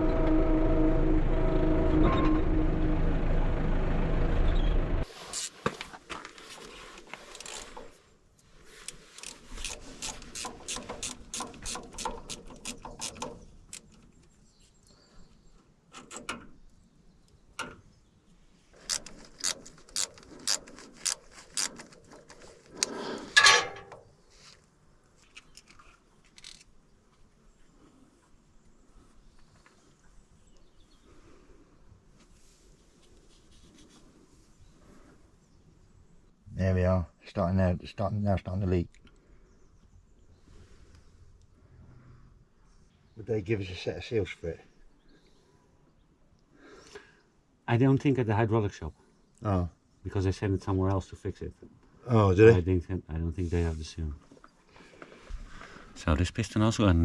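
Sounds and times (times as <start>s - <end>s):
diesel engine running: 0.0s - 5.1s
scrape: 5.0s - 10.3s, 32.2s - 35.1s, 53.4s - 53.9s.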